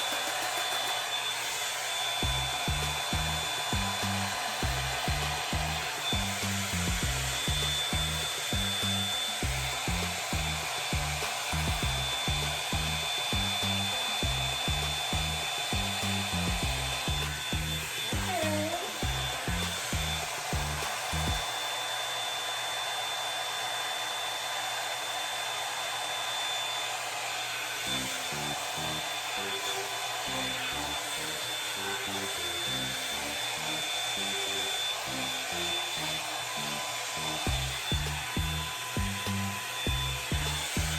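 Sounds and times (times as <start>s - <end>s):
hair dryer brush blowing: 0.0s - 40.9s
background music with bass beat: 2.2s - 21.4s, 37.5s - 40.9s.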